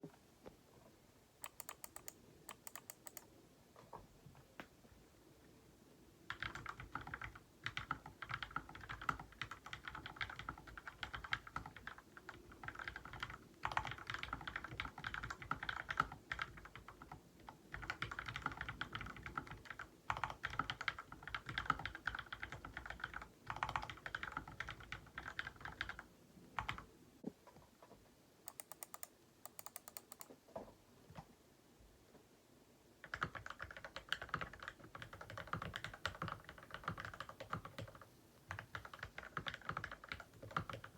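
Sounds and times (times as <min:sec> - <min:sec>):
typing on mechanical keyboard: 0:01.4 - 0:03.3, 0:06.3 - 0:26.9, 0:28.5 - 0:30.3, 0:33.0 - 0:40.9.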